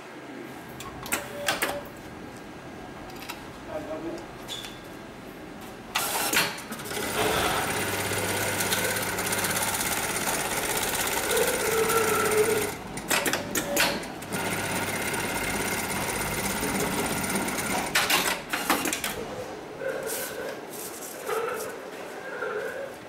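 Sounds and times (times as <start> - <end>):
sewing machine stitching: 6.0 - 19.2.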